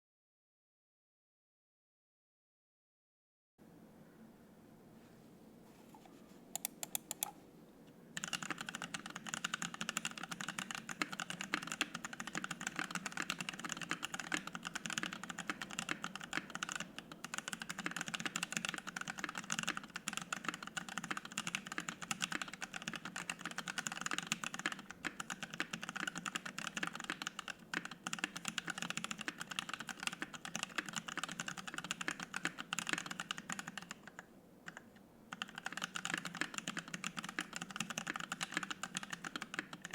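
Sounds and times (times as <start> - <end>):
typing on mechanical keyboard: 8.2 - 39.9.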